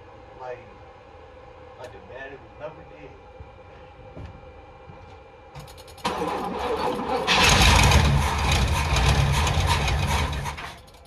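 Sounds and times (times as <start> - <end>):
engine cranked by starter: 6.0 - 11.0.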